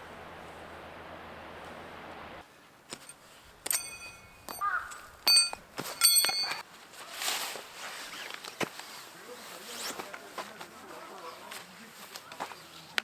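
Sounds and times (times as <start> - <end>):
rustling: 2.6 - 13.0
metal objects clinking: 2.9 - 6.6.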